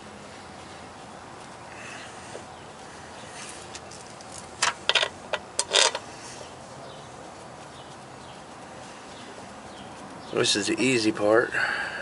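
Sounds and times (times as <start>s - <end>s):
metal tools clinking: 3.9s - 6.1s.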